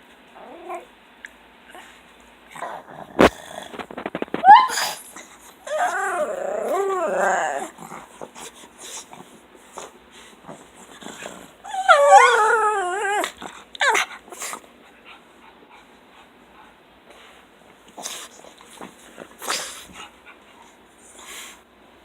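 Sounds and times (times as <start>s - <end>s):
dog yodelling whine: 4.3s - 7.8s, 11.6s - 14.1s
dog yelp: 4.4s - 5.0s
dog snuffling and breathing: 13.3s - 21.6s.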